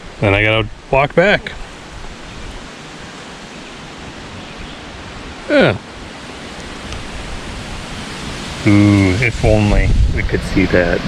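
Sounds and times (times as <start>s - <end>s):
wind on microphone: 3.8s - 11.0s.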